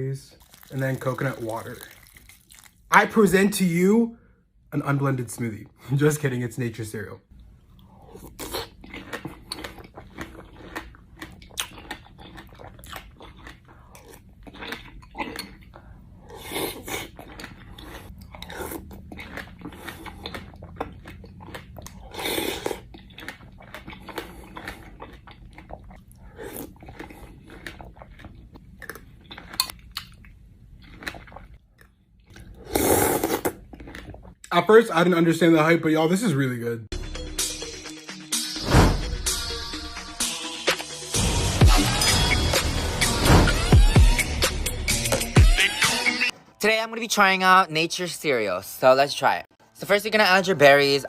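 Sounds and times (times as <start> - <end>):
person chewing and crunching: 0.3 - 2.9, 7.4 - 34.5.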